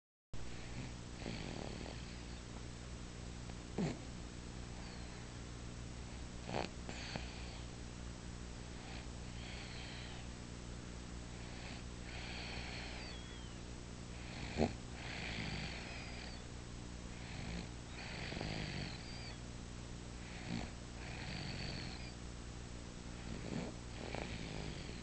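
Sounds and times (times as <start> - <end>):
steady low hum: 0.4 - 25.0
snoring breaths: 0.5 - 2.4, 3.8 - 4.0, 6.1 - 7.7, 8.7 - 10.3, 11.3 - 13.5, 14.1 - 16.4, 17.1 - 19.4, 20.2 - 22.2, 23.2 - 25.0.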